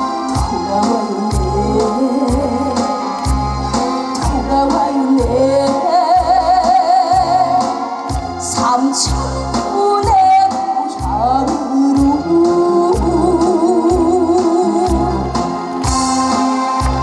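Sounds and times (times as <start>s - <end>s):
woman singing with vibrato: 0.0s - 15.6s.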